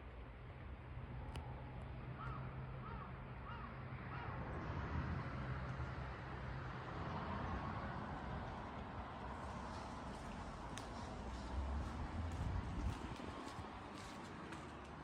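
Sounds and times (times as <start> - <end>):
crow cawing: 2.2 - 4.4.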